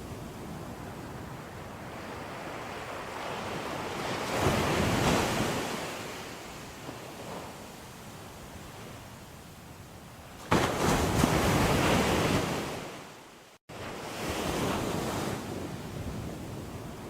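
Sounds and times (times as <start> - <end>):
ocean waves breaking on shore: 0.0 - 17.0.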